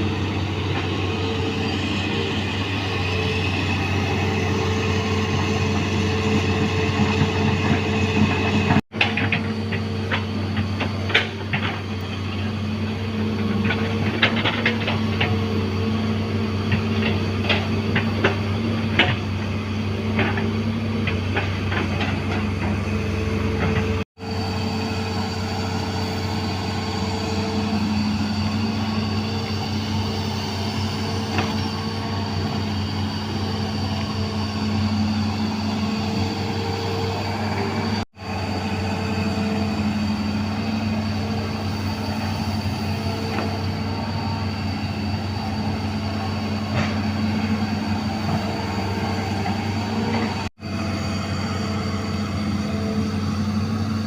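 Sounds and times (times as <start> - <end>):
excavator diesel engine under load: 0.0 - 54.0.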